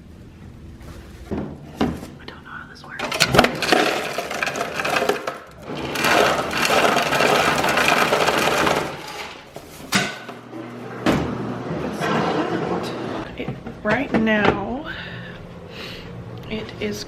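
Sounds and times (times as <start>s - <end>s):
ice cubes clattering into bucket: 3.0s - 10.3s
ice machine motor running: 3.0s - 13.3s.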